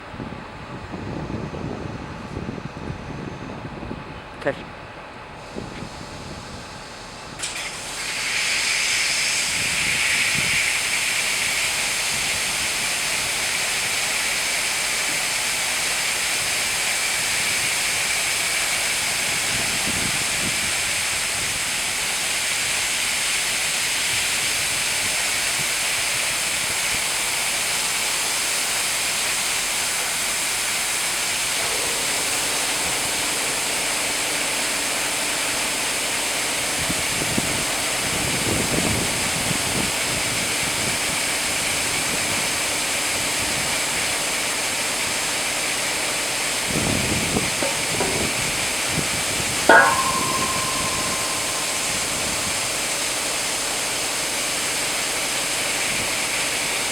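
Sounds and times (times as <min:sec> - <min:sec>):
high-pressure water jets spraying: 0:07.4 - 0:37.4.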